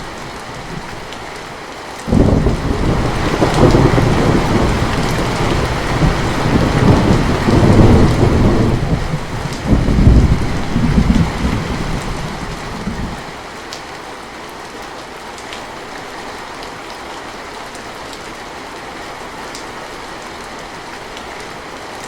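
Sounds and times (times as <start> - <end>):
steady rain hiss: 0.0 - 22.0
thunder rumbling: 2.1 - 13.3.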